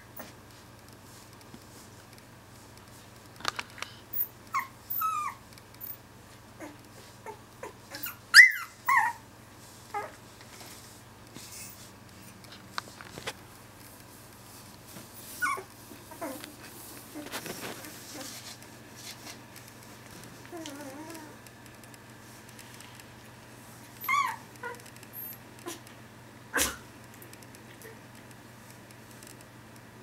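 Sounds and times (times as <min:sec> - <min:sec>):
puppies whimpering and squeaking: 0:04.2 - 0:06.0, 0:06.6 - 0:09.2, 0:15.2 - 0:16.4, 0:24.0 - 0:25.8.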